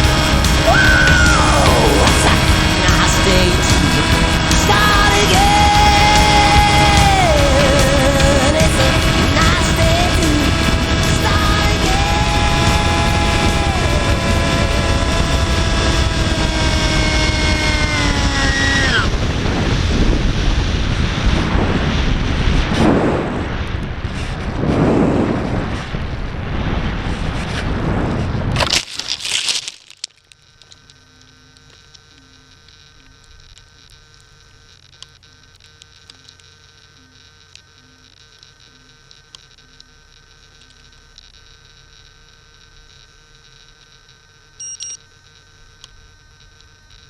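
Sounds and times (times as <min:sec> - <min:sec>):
rough rushing noise: 0:00.0 - 0:18.3, 0:19.1 - 0:29.8
electric motor whining: 0:00.0 - 0:47.0
faint hum: 0:00.0 - 0:47.0.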